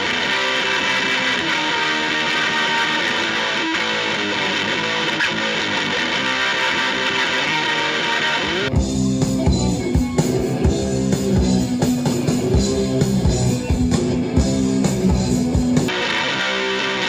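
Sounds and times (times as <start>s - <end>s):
distorted electric guitar: 0.0s - 17.0s
rock band playing: 0.0s - 17.0s.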